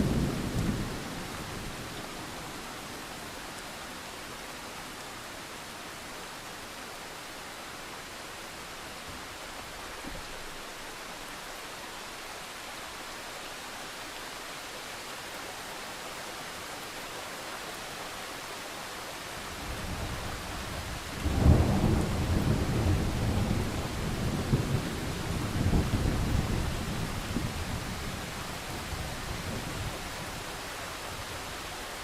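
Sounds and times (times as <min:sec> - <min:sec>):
rain hiss: 0:00.0 - 0:32.0
thunder rumbling and cracking: 0:21.2 - 0:28.0.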